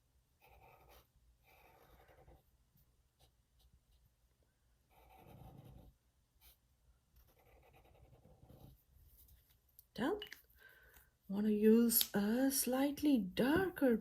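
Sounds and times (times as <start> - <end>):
marker scratching on paper: 0.4 - 2.5, 4.9 - 6.6, 7.2 - 9.6.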